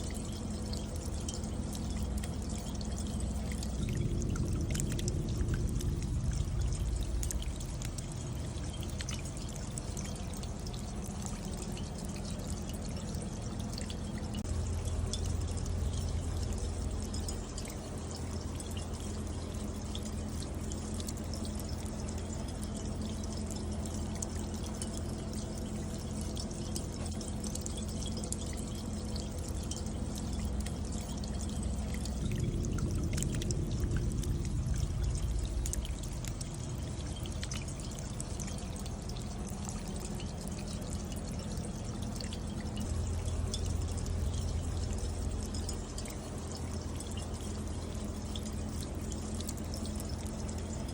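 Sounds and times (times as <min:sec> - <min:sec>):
water dripping down rain chain: 0:00.0 - 0:50.9
low rush of water: 0:03.4 - 0:09.7, 0:31.7 - 0:40.2, 0:42.6 - 0:48.0.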